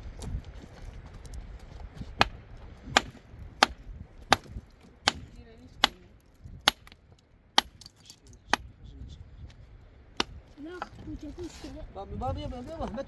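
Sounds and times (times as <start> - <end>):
tool striking wood: 2.2 - 6.0.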